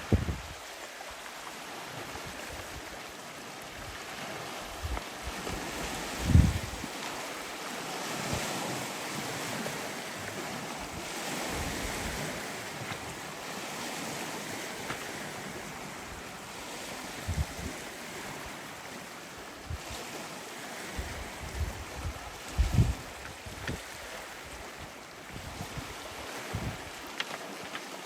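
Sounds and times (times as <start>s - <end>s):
wind buffeting microphone: 0.0s - 0.7s, 3.7s - 7.1s, 9.2s - 18.7s, 19.6s - 27.0s
surf washing on rocky shore: 0.0s - 28.0s.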